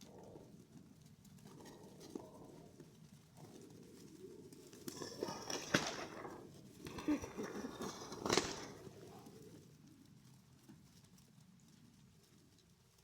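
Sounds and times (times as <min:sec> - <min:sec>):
pigeon wing flaps: 0:04.9 - 0:09.6.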